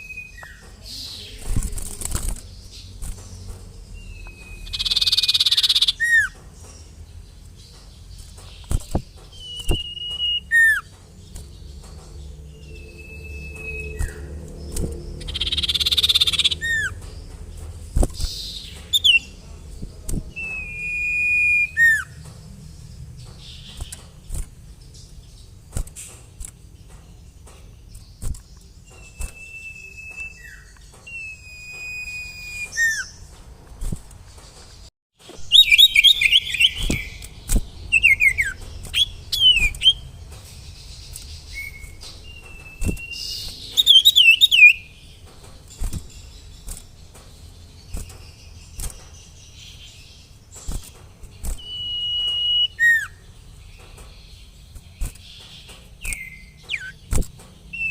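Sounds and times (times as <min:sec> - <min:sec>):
bird whistling calls: 0:00.0 - 0:01.4, 0:04.0 - 0:06.4, 0:09.3 - 0:10.9, 0:12.6 - 0:17.0, 0:20.3 - 0:22.2, 0:28.8 - 0:33.2, 0:35.4 - 0:37.3, 0:37.9 - 0:40.0, 0:41.5 - 0:44.9, 0:51.4 - 0:53.2, 0:56.0 - 0:57.1
bird chattering chirps: 0:00.0 - 0:25.6, 0:35.3 - 0:57.9.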